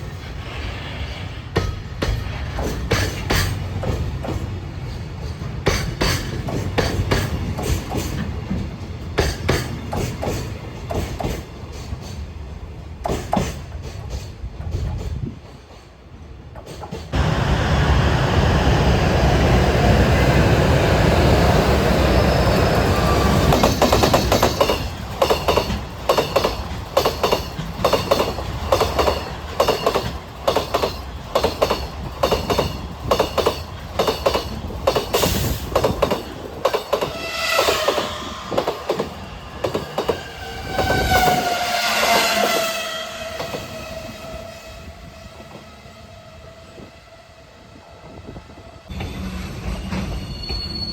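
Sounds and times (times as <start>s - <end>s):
freight train rumble: 0.0s - 50.9s
train wheels clacking on rail joints: 1.1s - 17.2s, 22.6s - 42.7s.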